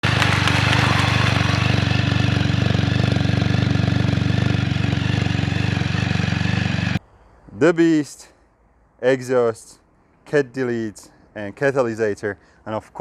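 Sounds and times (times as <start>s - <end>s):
engine idling through exhaust: 0.0s - 4.8s.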